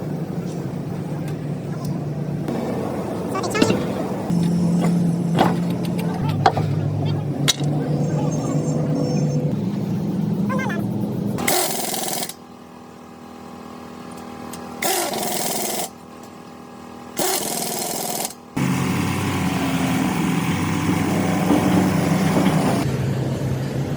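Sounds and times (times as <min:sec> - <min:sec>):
low engine rumble: 0:00.0 - 0:14.8, 0:18.5 - 0:23.9
power tool motor whining: 0:11.4 - 0:12.4, 0:14.5 - 0:16.3, 0:17.1 - 0:22.8.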